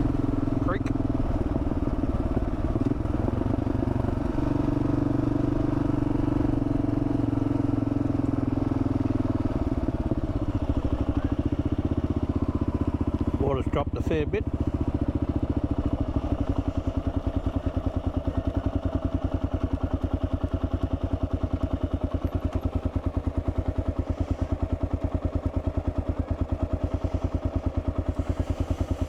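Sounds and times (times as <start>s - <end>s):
motorcycle engine idling: 0.0s - 29.0s.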